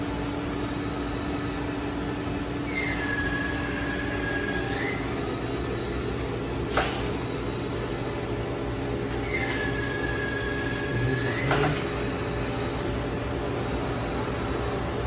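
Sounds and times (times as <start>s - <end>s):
high motor whine: 0.0s - 15.0s
lathe humming: 7.2s - 15.0s.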